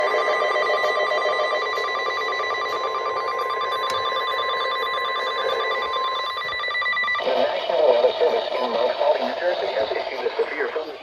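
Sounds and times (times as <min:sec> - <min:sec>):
steady alarm tone: 0:00.0 - 0:11.0
radio hiss: 0:07.2 - 0:11.0.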